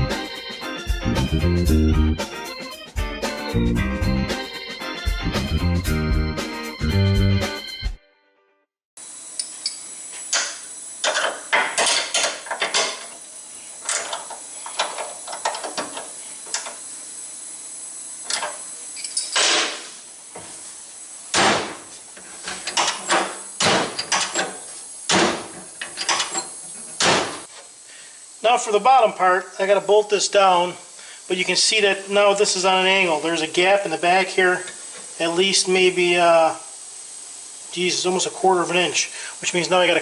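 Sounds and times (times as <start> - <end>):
faint steady hiss: 18.2 - 40.0.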